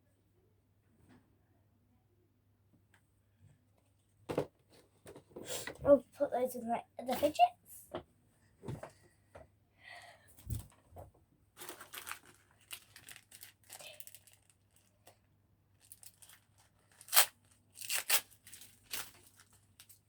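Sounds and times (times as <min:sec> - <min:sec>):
packaging ripping and rustling: 0:11.6 - 0:15.2, 0:15.8 - 0:20.0.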